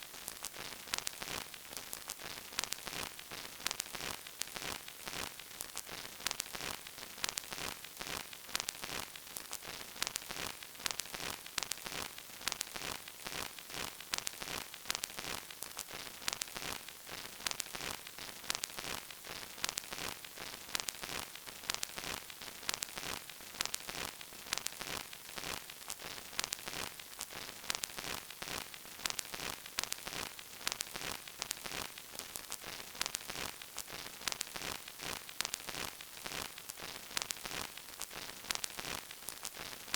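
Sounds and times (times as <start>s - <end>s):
vinyl record surface hiss: 0.0s - 39.9s.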